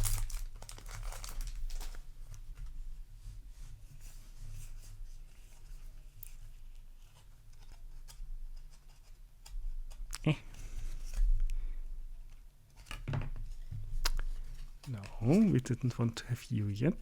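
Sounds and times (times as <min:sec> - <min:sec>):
cards and foil wrapper rustling: 0:00.0 - 0:02.1.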